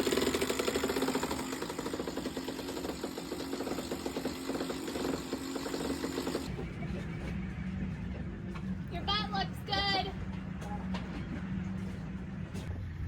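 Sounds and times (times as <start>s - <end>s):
motor hum: 0.0s - 7.8s.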